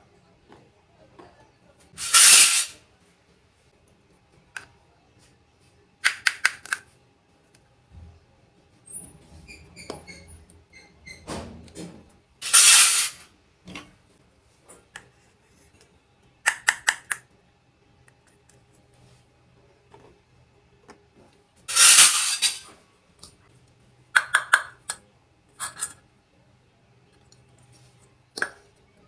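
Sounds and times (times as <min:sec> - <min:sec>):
short hiss: 0:02.0 - 0:02.8, 0:12.4 - 0:13.2, 0:21.7 - 0:22.6
sharp clicks of toy kitchenware: 0:06.0 - 0:06.9, 0:16.5 - 0:17.3, 0:24.2 - 0:25.0.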